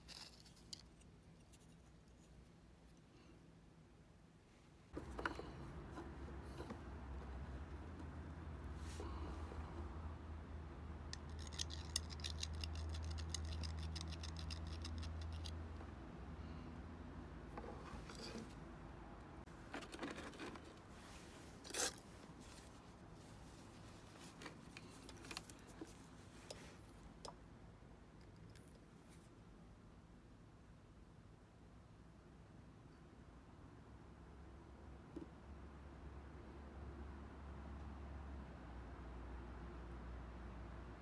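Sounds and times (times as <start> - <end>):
tools scraping metal: 21.6 - 22.1.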